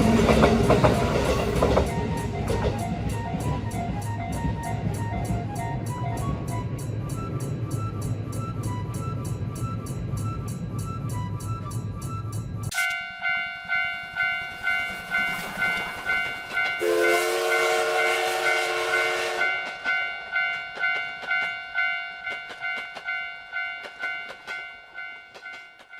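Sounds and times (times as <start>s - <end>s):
railroad crossing bell clanging: 0.0s - 25.9s
rush of train noise: 0.0s - 25.9s
train horn chord: 16.8s - 19.9s.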